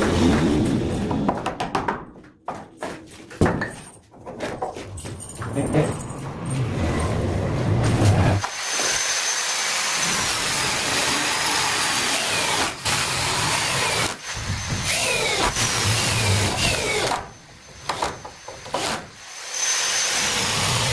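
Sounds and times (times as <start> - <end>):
power tool motor running: 7.8 - 20.9.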